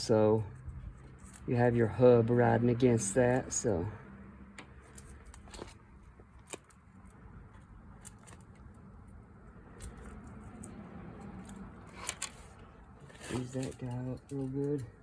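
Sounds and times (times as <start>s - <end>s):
light rubbing: 9.7s - 15.0s.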